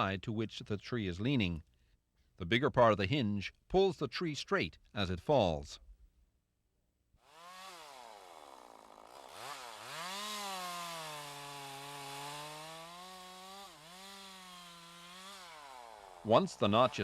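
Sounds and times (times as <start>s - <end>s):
chainsaw cutting into tree: 7.2s - 17.0s.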